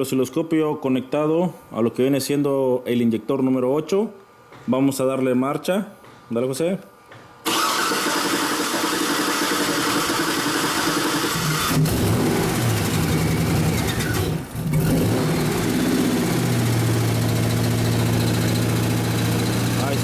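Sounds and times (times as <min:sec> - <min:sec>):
engine cranking on starter: 0:07.4 - 0:20.0
car engine idling: 0:09.0 - 0:20.0.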